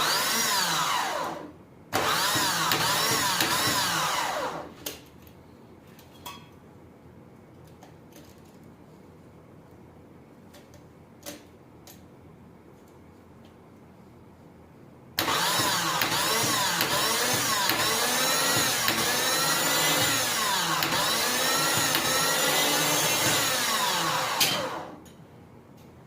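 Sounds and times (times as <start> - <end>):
starter motor whine: 15.2 - 25.0.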